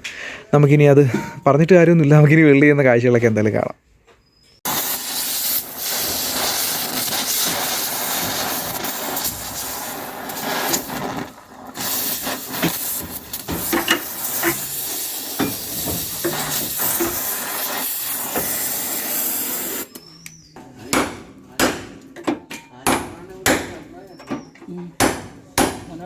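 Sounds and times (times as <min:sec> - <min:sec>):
welding hiss with small pops: 0:04.6 - 0:20.0.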